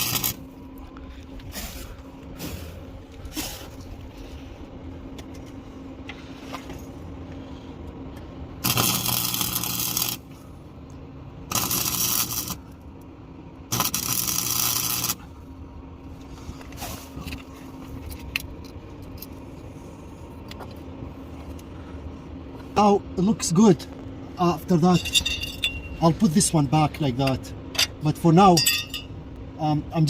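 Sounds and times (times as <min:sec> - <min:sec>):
welding arc crackling: 0:00.0 - 0:00.6, 0:08.6 - 0:10.3, 0:11.4 - 0:12.8, 0:13.7 - 0:15.2
low buzz: 0:00.0 - 0:27.8
steady low hum: 0:00.0 - 0:30.0.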